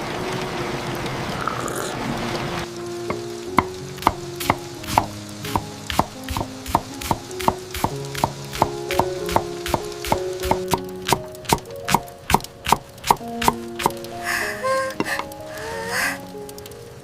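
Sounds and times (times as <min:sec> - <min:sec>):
rain-like hiss: 0:00.0 - 0:17.0
soft sustained music notes: 0:02.0 - 0:17.0
knife chopping on cutting board: 0:04.0 - 0:10.8.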